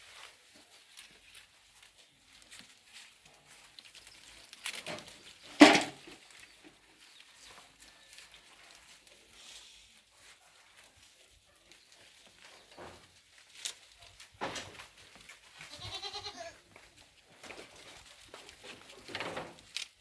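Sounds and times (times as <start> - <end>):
goat bleating: 15.6 - 16.6.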